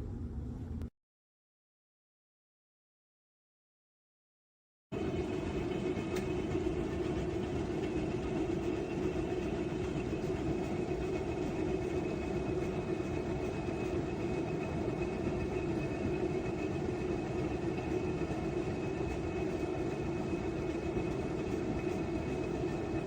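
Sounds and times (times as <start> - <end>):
washing machine humming: 4.9 - 23.0.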